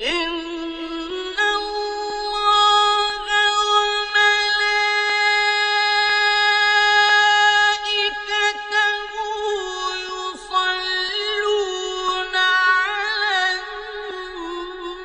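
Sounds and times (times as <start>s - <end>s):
man reciting in melodic chant: 0.0s - 15.0s.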